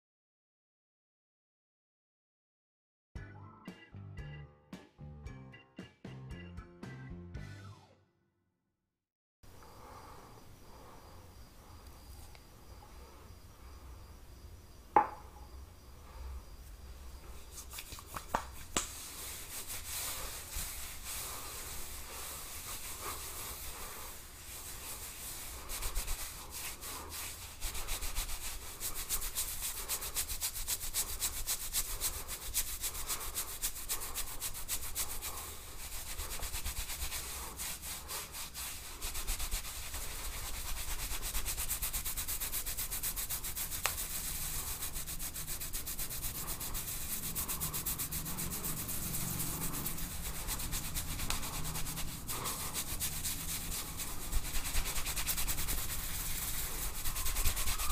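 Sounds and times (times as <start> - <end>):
fingers scratching hair: 17.2 - 57.9.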